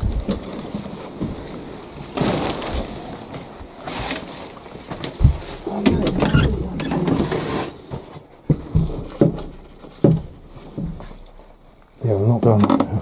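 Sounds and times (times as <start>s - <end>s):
footsteps crunching on littered floor: 0.0s - 6.2s
rustling: 0.0s - 13.0s.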